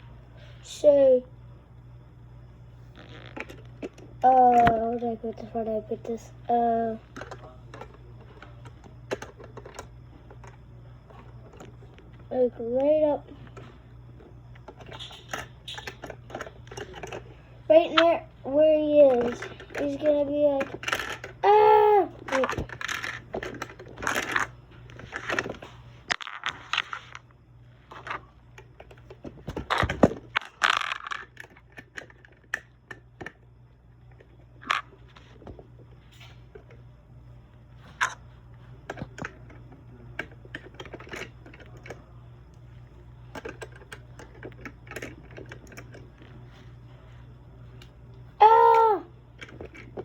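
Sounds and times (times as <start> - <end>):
plastic bricks clicking together: 19.1 - 21.4, 22.3 - 24.5, 25.1 - 27.2, 28.0 - 33.4, 43.3 - 46.0.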